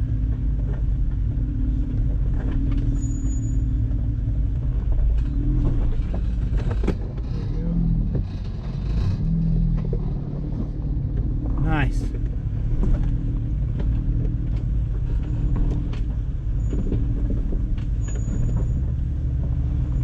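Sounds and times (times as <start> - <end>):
engine running at low revs: 0.0 - 20.0.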